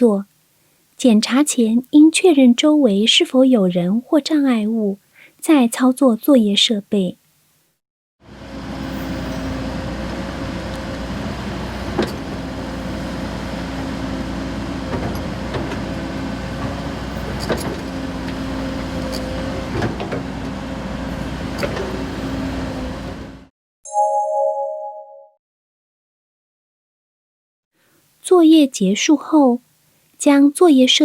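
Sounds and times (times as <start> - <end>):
hydraulic whine: 8.3 - 23.5.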